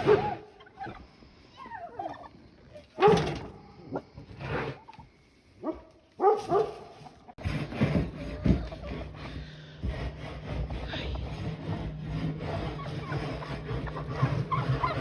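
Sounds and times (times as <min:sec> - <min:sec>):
turkeys calling: 0:00.0 - 0:03.0
scraping sound: 0:06.4 - 0:15.0.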